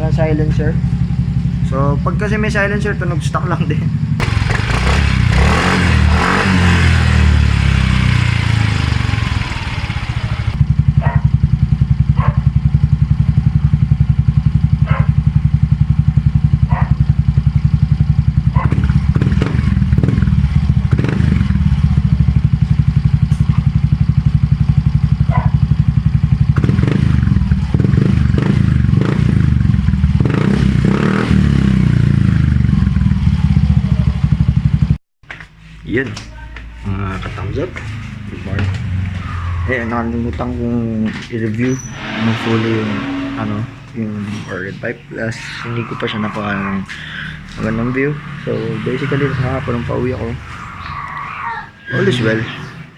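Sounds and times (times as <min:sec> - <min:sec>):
scooter engine putter: 0:04.2 - 0:06.9.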